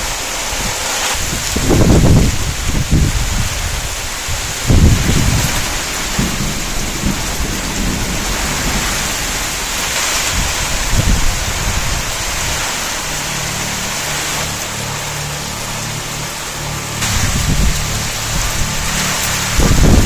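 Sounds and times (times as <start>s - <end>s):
heavy rain falling: 0.0s - 20.0s
low rumbles: 0.0s - 20.0s.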